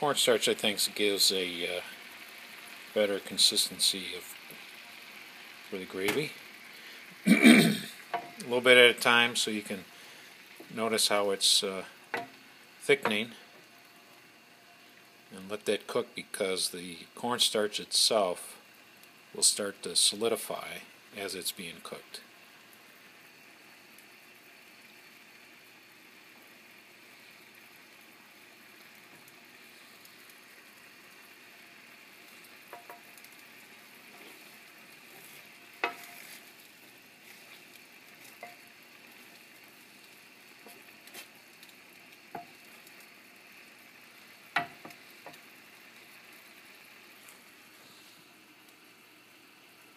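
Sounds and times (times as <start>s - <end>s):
gravy simmering with faint hiss: 0.0s - 49.9s
utensil knocking against pan: 35.8s - 36.1s.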